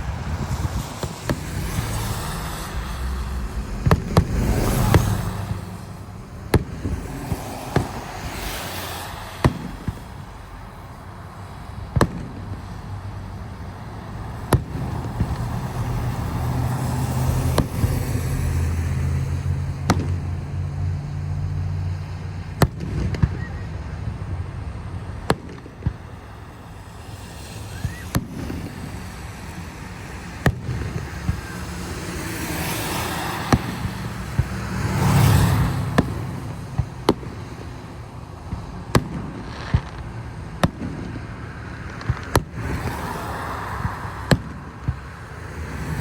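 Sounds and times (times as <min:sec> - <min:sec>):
fireworks bangs: 0:00.0 - 0:46.0.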